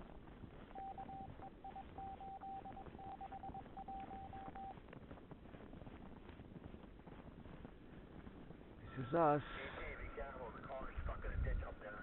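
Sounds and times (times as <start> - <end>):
faint background noise: 0.0 - 12.0
electronic beep tones: 0.7 - 4.8.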